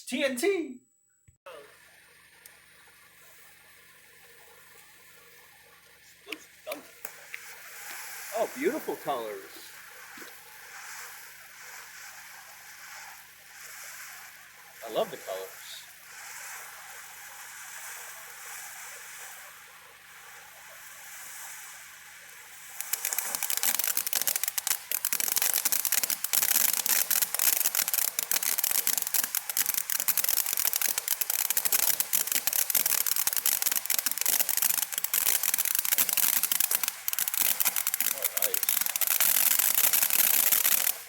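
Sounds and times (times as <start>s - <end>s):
firework fountain hissing and crackling: 1.5s - 41.0s.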